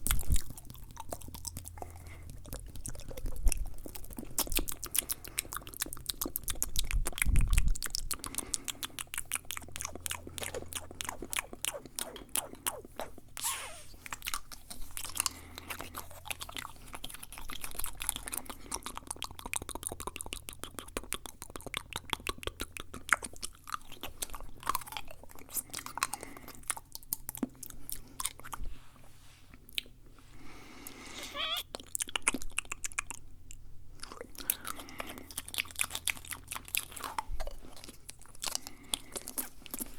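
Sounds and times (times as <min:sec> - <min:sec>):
wet mouth clicks and smacks: 0:00.0 - 0:28.6, 0:31.6 - 0:39.9
slurping mouth sounds: 0:00.0 - 0:28.8, 0:30.7 - 0:33.2.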